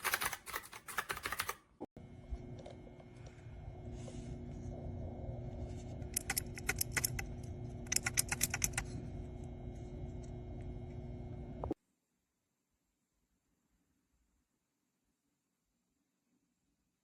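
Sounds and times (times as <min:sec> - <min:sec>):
mechanical keyboard typing: 0:00.0 - 0:01.6, 0:06.2 - 0:08.9
steady low hum: 0:02.0 - 0:11.8.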